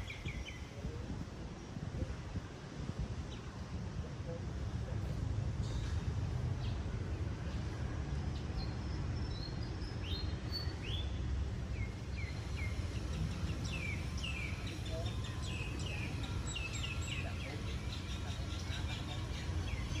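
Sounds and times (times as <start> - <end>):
small birds chirping: 0.0 - 0.9, 8.3 - 20.0.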